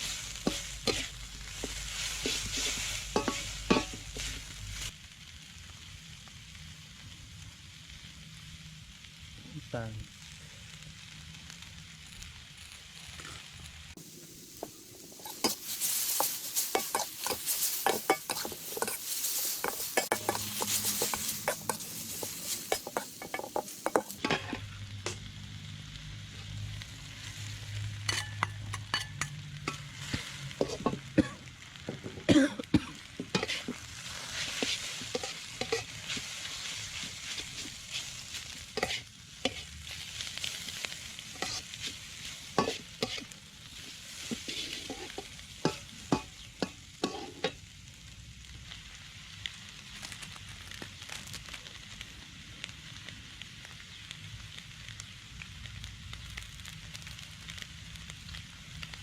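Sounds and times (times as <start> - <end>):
noodles sizzling in a pan: 0.0 - 59.0.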